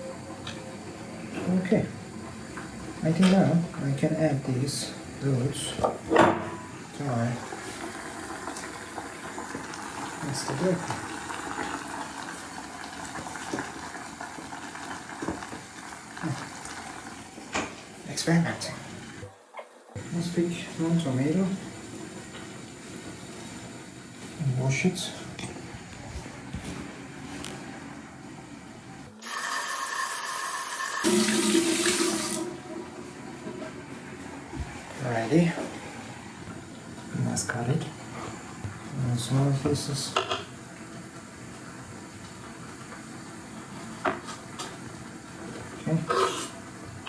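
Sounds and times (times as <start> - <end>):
pot bubbling at the boil: 6.8 - 17.5
kitchen tap running water: 6.9 - 19.3, 29.2 - 33.5.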